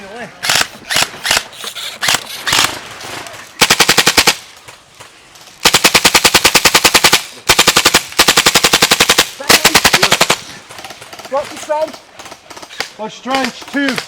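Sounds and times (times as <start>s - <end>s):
airsoft rifle firing: 0.4s - 2.8s, 3.6s - 4.4s, 5.6s - 11.1s.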